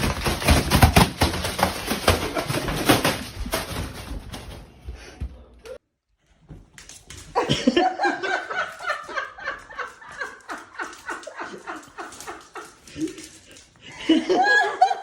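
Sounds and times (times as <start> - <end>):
person laughing heartily: 7.4 - 15.0.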